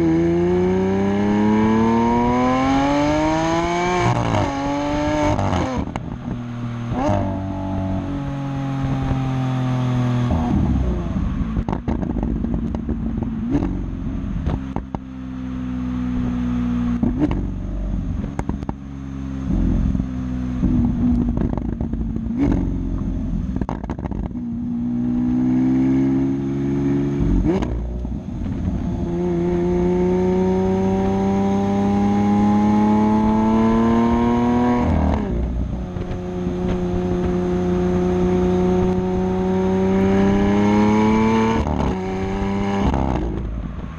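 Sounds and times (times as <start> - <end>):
sports car engine revving: 0.0 - 43.9
exhaust cracks and pops: 11.6 - 13.7, 21.1 - 22.6, 23.6 - 24.4.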